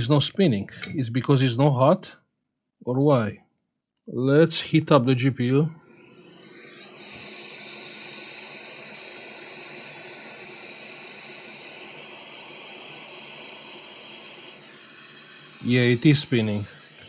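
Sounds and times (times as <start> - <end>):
hot air gun hissing: 6.0 - 17.0.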